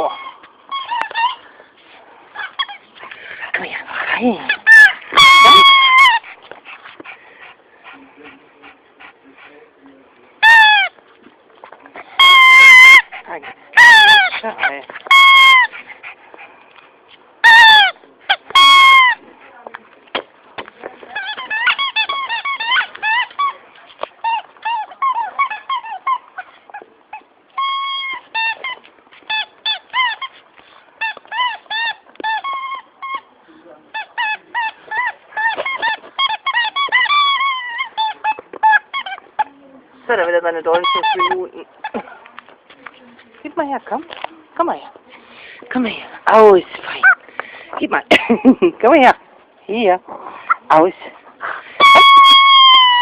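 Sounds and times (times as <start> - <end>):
squeaky toy squeaking: 0.0 - 1.4, 2.4 - 2.9, 4.5 - 6.4, 10.4 - 11.0, 12.0 - 16.1, 17.4 - 19.2, 21.1 - 23.6, 24.2 - 30.4, 31.0 - 33.3, 33.9 - 39.5, 40.5 - 42.0, 51.8 - 53.0.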